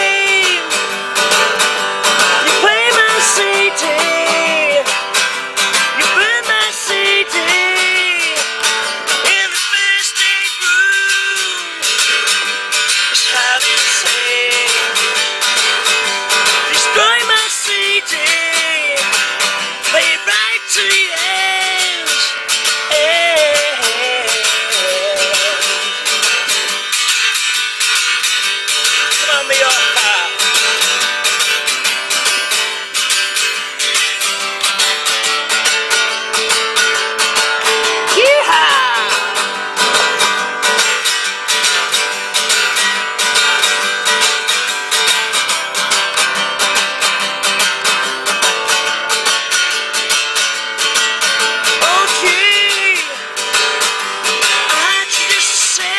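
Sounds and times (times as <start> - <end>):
acoustic guitar strumming: 0.0 - 55.9
person singing short notes: 37.8 - 40.2, 51.8 - 53.2.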